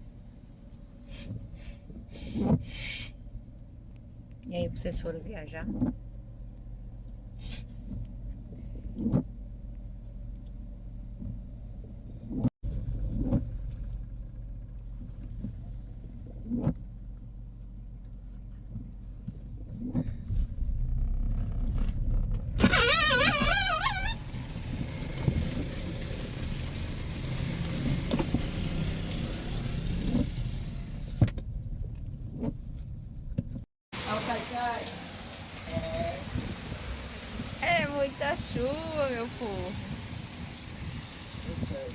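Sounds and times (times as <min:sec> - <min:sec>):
car drone inside cabin: 0:00.0 - 0:33.7
wavering squeal: 0:22.6 - 0:24.7
heavy rain hiss: 0:34.0 - 0:41.9.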